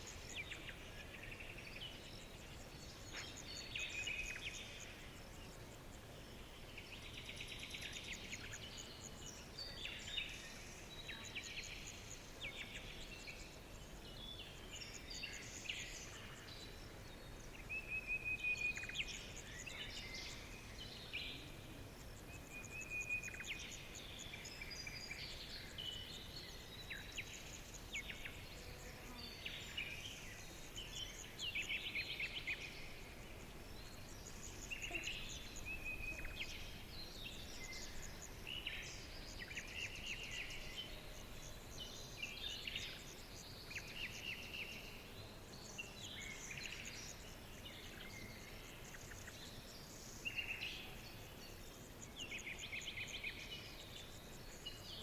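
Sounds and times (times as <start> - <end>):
faint steady hiss: 0.0 - 55.0
wild birds singing: 0.0 - 55.0.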